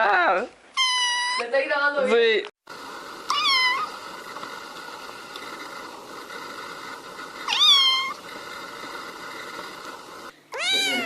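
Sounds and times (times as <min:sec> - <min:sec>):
kitten meowing: 0:03.3 - 0:03.9, 0:10.5 - 0:11.0.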